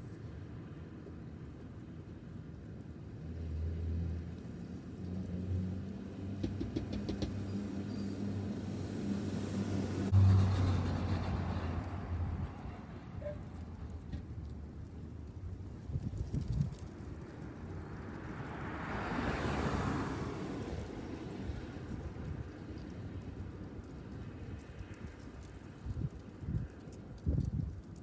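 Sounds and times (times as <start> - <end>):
car driving past slowly: 3.2 - 14.7, 16.4 - 23.3.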